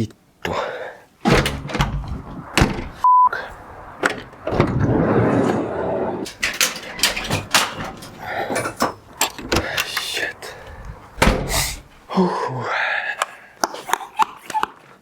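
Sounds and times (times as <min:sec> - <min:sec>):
censor bleep: 0:03.0 - 0:03.3.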